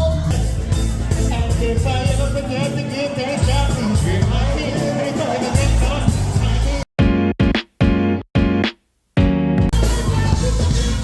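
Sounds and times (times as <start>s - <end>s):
dancehall song with heavy bass: 0.0s - 6.9s, 9.7s - 11.0s.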